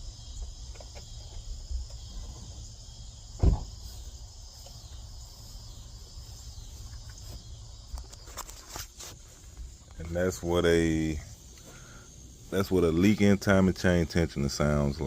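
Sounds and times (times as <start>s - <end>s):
crickets chirping: 0.0s - 15.0s
loud thump: 3.4s - 3.9s.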